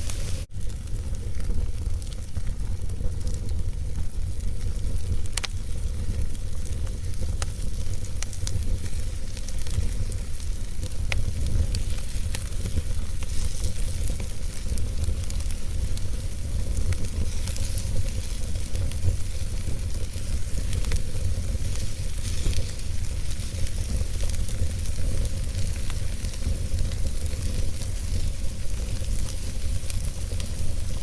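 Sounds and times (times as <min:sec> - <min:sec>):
fire crackling and popping: 0:00.0 - 0:31.0.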